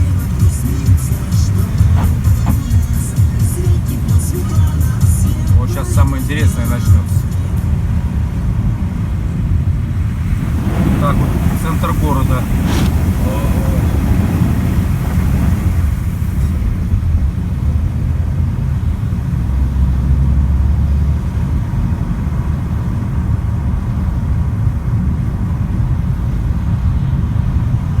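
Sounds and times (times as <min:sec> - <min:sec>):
high hiss: 0:00.0 - 0:06.9, 0:10.3 - 0:16.7
car engine and road rumble: 0:00.0 - 0:28.0.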